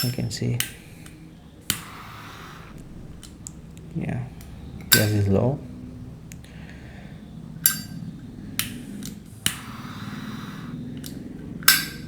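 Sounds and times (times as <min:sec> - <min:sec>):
lighter clicking: 0:00.0 - 0:03.6, 0:08.6 - 0:10.4
torch gas hissing: 0:00.0 - 0:12.0.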